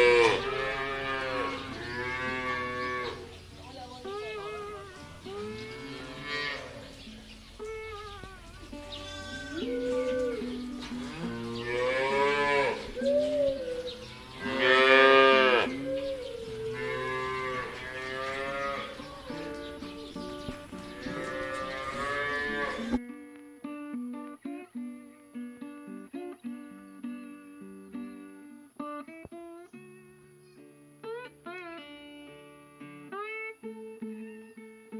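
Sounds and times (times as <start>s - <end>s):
cattle mooing: 0.0s - 3.3s, 4.2s - 7.0s, 8.5s - 19.6s, 20.8s - 23.0s
acoustic guitar music: 0.0s - 34.9s.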